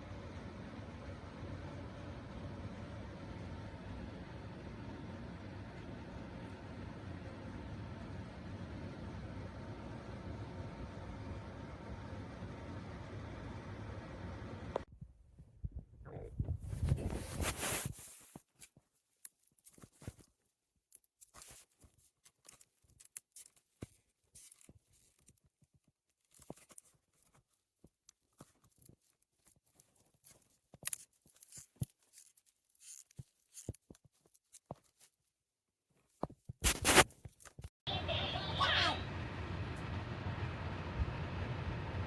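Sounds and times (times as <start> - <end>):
short rustles: 16.5 - 18.8, 36.0 - 37.6.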